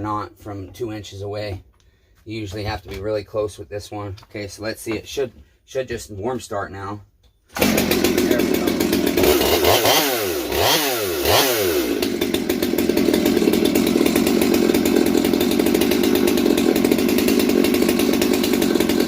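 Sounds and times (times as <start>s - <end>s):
chainsaw running: 7.5s - 19.0s.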